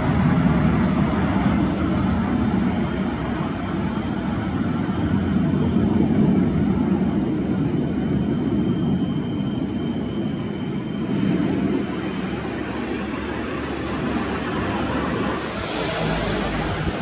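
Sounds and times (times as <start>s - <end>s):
jet engines roaring: 0.0s - 17.0s.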